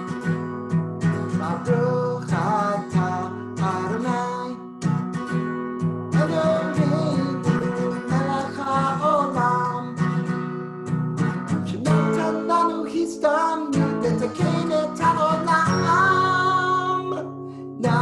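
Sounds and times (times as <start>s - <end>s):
acoustic guitar strumming: 0.0s - 18.0s
man singing: 1.2s - 4.7s, 6.1s - 10.2s, 11.6s - 18.0s.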